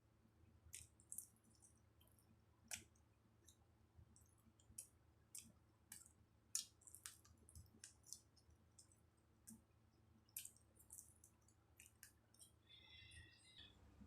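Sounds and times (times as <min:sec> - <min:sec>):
person chewing food: 0:04.2 - 0:13.0.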